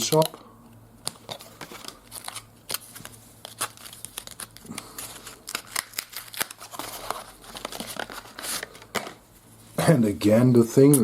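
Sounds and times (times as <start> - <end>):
wrapper crinkling and tearing: 1.0 - 8.9.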